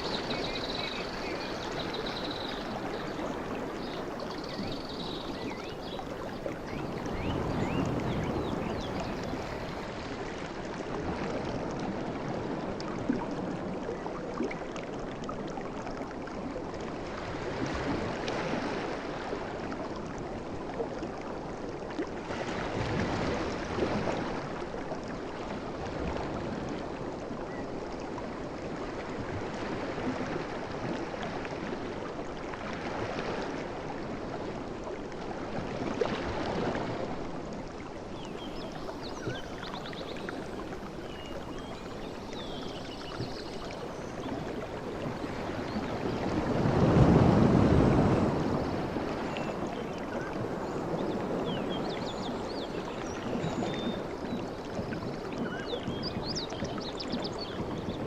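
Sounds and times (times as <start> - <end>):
sea waves washing in: 0.0 - 13.7, 28.2 - 58.0.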